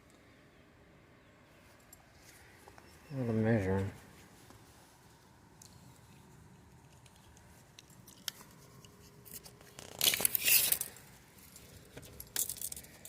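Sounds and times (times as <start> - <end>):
tape measure blade rattling: 9.3 - 11.0.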